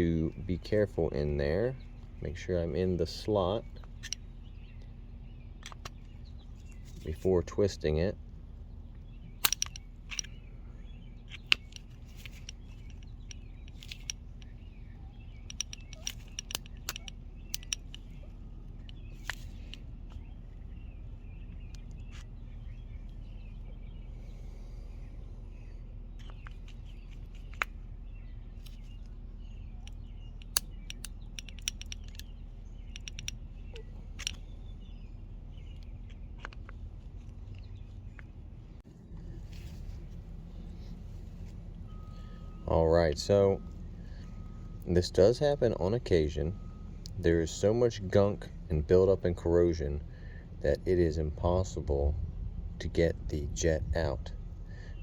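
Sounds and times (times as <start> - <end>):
steady low hum: 0.0 - 55.0
screwdriver clicking and scraping: 9.4 - 10.4, 11.3 - 14.3, 15.4 - 18.1, 30.4 - 32.3, 32.9 - 33.3.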